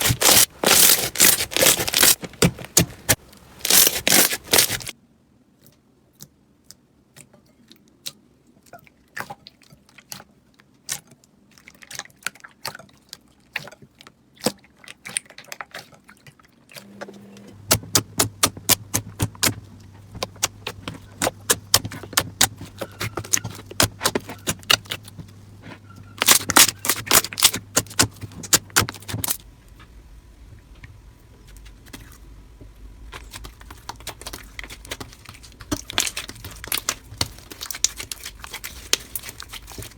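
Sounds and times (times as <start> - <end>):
slime clicking and crackling: 0.0 - 4.9, 17.7 - 25.4, 26.2 - 29.4, 33.0 - 39.9.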